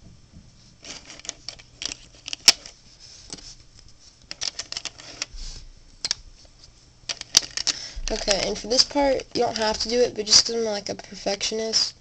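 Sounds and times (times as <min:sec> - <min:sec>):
plastic pieces clicking: 0:00.9 - 0:02.7, 0:04.3 - 0:05.3, 0:07.1 - 0:09.9.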